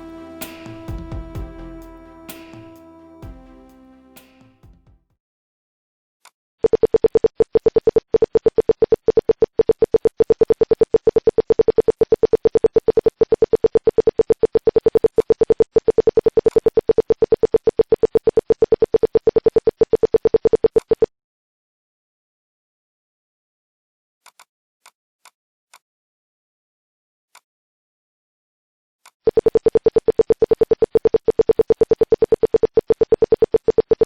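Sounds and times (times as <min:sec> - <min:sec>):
alarm buzzer beeping rapidly: 0:00.0 - 0:04.6.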